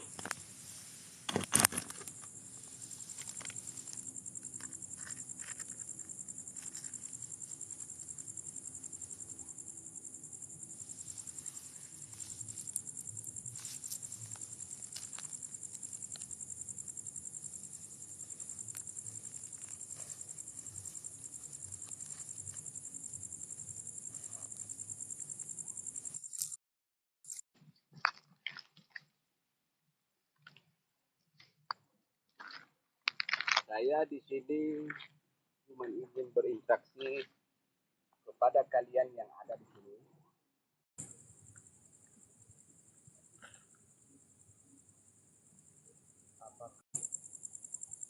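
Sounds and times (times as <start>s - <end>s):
crickets trilling: 0.0s - 26.6s, 41.0s - 48.0s.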